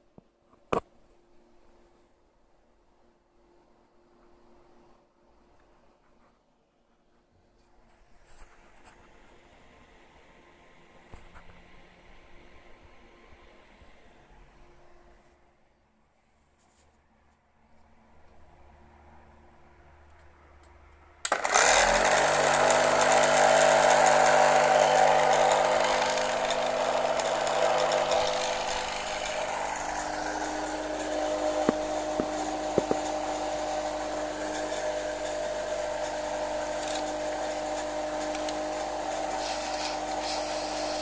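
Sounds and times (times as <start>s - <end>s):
air compressor humming: 21.2s - 41.0s.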